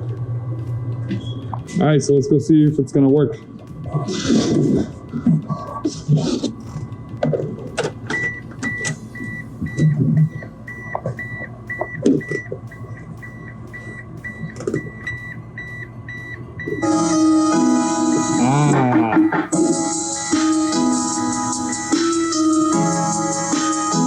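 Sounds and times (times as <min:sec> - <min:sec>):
car warning chime beeping: 0:04.6 - 0:23.1.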